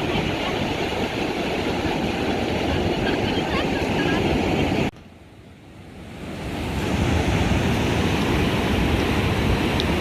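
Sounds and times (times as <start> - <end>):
wind buffeting microphone: 0.0 - 4.9
ocean surf: 0.0 - 10.0.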